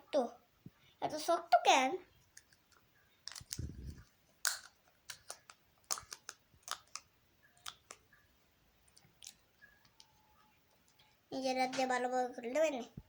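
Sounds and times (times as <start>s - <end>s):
plastic packaging clicking and crackling: 2.3s - 8.0s.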